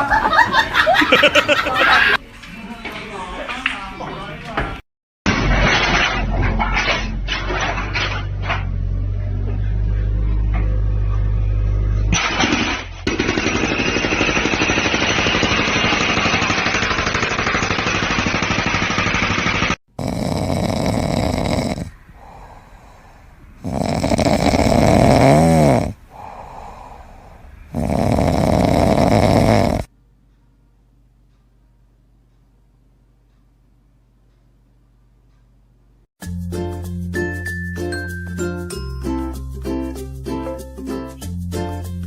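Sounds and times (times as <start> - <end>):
rough fast-pulsing sound: 12.2 - 19.8
animal snoring: 20.0 - 29.9.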